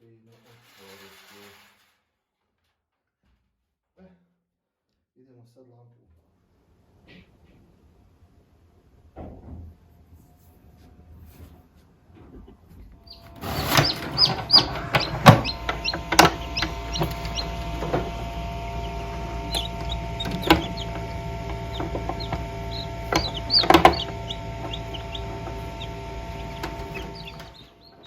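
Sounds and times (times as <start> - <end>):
mechanical hum: 6.4 - 28.0
chicks peeping: 13.1 - 28.0
sharp knocks and clatters: 13.3 - 28.0.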